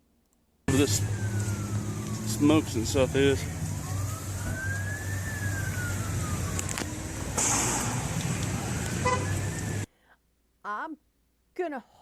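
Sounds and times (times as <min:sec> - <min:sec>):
emergency siren wailing: 0:00.7 - 0:09.9
short hissing burst: 0:07.4 - 0:08.1.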